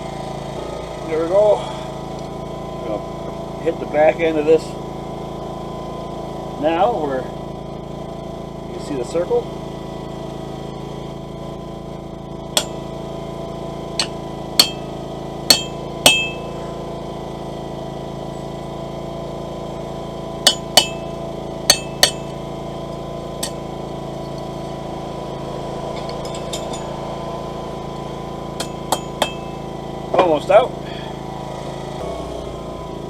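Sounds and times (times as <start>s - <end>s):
steady hum: 0.0s - 19.0s, 19.6s - 33.0s
hammer striking metal punch: 12.6s - 12.8s, 14.0s - 14.9s, 15.5s - 16.6s, 20.4s - 22.4s, 23.4s - 23.6s, 28.6s - 29.6s.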